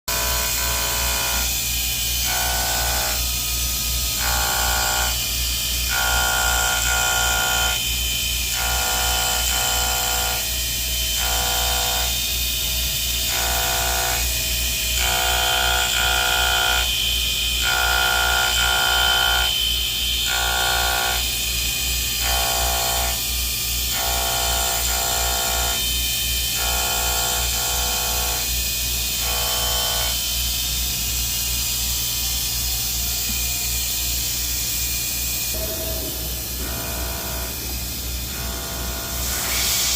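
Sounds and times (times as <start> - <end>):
steady low hum: 30.2 - 39.9.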